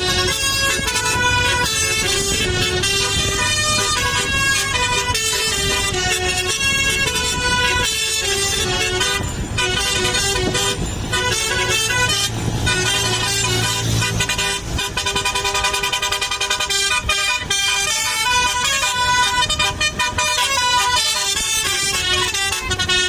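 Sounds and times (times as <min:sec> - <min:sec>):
musical air horn melody: 0:00.0 - 0:23.0.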